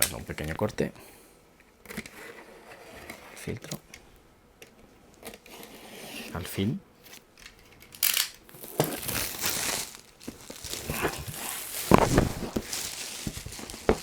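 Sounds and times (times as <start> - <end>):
plastic wrap crinkling and tearing: 8.0 - 14.0.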